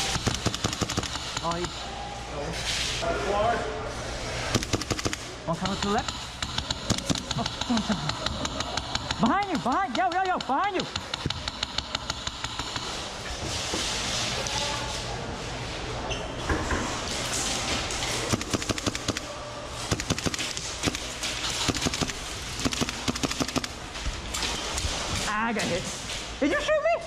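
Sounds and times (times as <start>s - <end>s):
airsoft guns firing: 0.0s - 1.6s, 4.5s - 13.0s, 18.2s - 23.8s
distant shouting voices: 1.7s - 2.6s.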